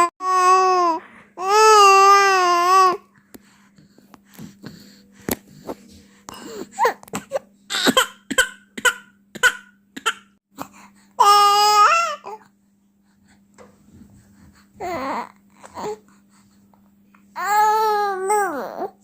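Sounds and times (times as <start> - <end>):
baby crying: 0.0 - 3.0, 6.8 - 10.3, 11.2 - 12.4, 17.4 - 19.0
baby coughing and grunting: 6.3 - 10.7.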